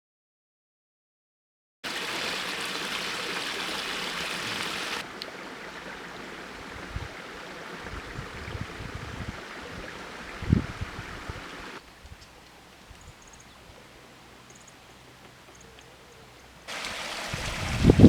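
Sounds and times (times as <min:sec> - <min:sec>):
running water rushing: 0:01.8 - 0:11.9, 0:16.5 - 0:18.0
outdoor noise: 0:01.8 - 0:18.0.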